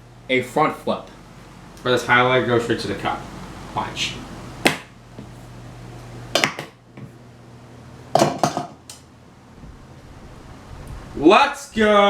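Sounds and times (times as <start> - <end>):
pen knocking against a cup: 6.4 - 7.1, 8.2 - 8.8.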